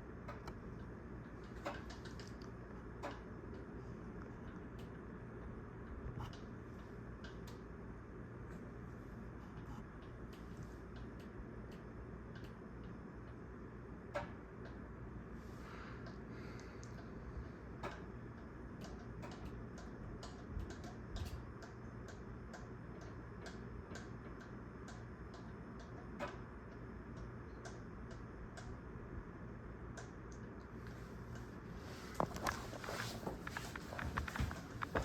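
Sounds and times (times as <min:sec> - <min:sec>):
ceiling fan humming: 0:00.0 - 0:35.0
fan ticking: 0:15.9 - 0:30.7, 0:31.3 - 0:35.0.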